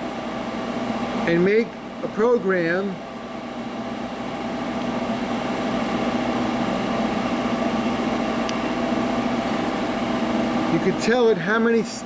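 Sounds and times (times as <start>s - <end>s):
hydraulic pump motor humming: 3.0s - 12.0s.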